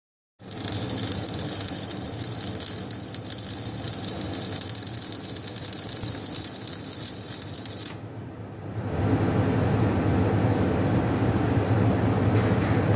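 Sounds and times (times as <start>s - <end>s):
welding arc crackling and hissing: 0.4s - 8.0s.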